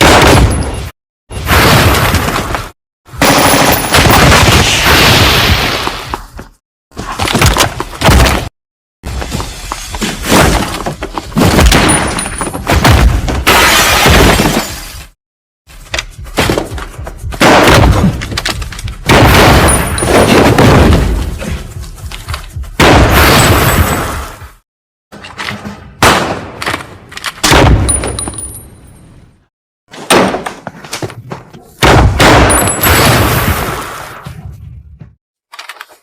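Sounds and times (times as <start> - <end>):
gun blasts: 26.0 - 26.6.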